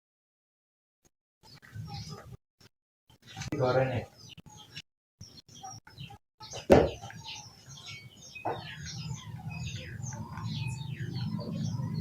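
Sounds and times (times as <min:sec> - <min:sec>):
small birds chirping: 0:01.4 - 0:02.4, 0:03.1 - 0:12.0
knock: 0:06.7 - 0:07.0.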